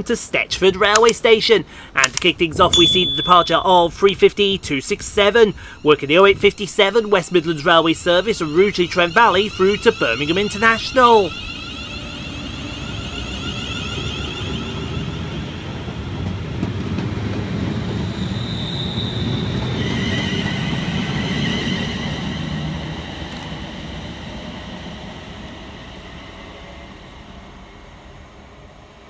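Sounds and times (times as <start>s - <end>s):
train wheels rumbling on rails: 3.5s - 29.0s
traction motor whine: 4.7s - 16.0s.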